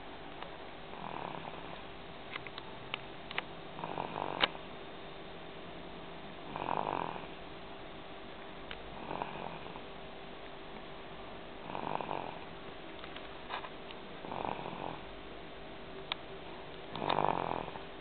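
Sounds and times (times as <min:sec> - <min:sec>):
slow rhythmic snoring: 0:00.9 - 0:01.9, 0:03.7 - 0:04.6, 0:06.4 - 0:07.4, 0:08.9 - 0:09.9, 0:11.6 - 0:12.6, 0:14.2 - 0:15.1, 0:16.9 - 0:18.0.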